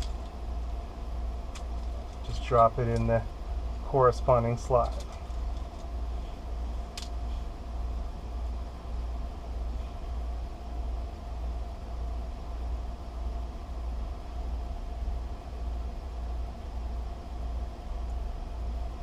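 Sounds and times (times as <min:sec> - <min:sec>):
low background hum: 0:00.0 - 0:19.0.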